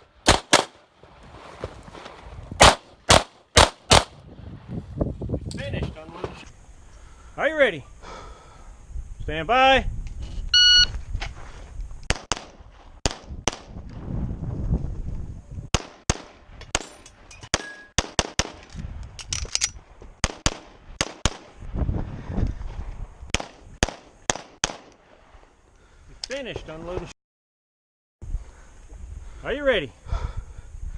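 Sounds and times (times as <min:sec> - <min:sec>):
pistol shots: 0:00.2 - 0:00.8, 0:02.6 - 0:04.1, 0:15.7 - 0:16.4, 0:23.3 - 0:25.0
shot timer beep: 0:10.5 - 0:10.9.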